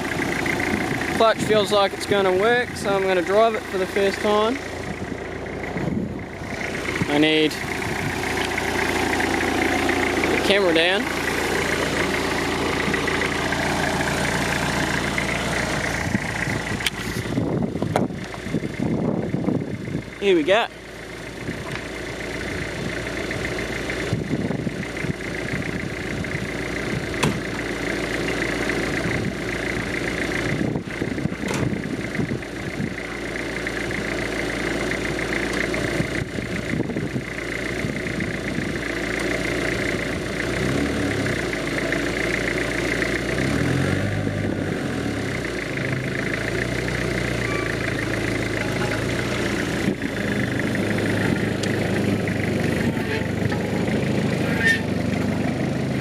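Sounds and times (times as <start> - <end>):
off-road vehicle engine revving: 0.0 - 56.0
sharp knocks: 27.2 - 27.5.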